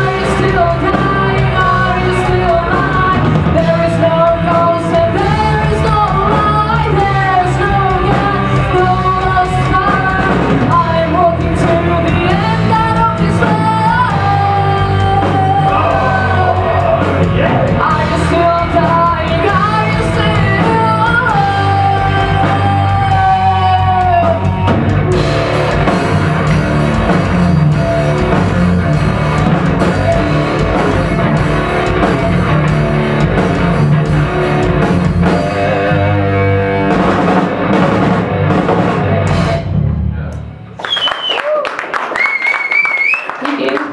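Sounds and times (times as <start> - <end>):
rock band playing: 0.0 - 43.9
woman singing and yelling: 0.1 - 16.8, 17.8 - 24.4.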